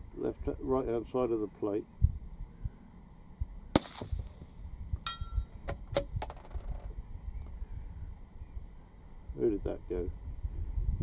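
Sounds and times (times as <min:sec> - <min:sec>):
rifle shot: 0:03.7 - 0:04.6
short metallic ring: 0:05.0 - 0:05.7.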